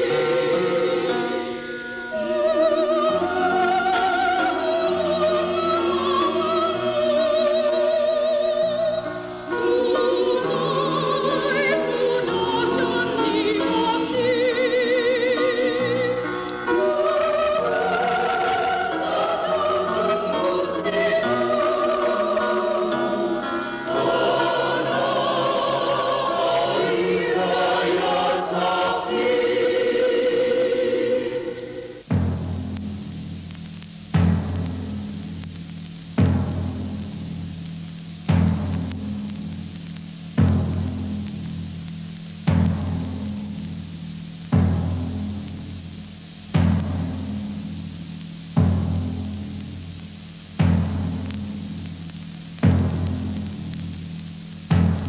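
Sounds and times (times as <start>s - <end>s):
choir singing with vibrato: 0.0s - 32.1s.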